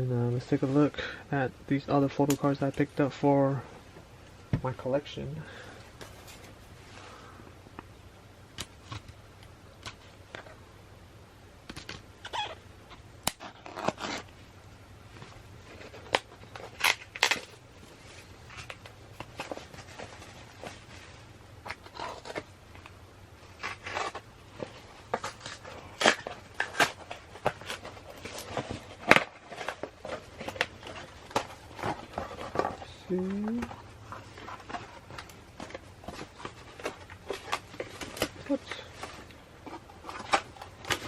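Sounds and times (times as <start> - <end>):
packaging crinkling and tearing: 11.7 - 14.3, 15.2 - 41.0.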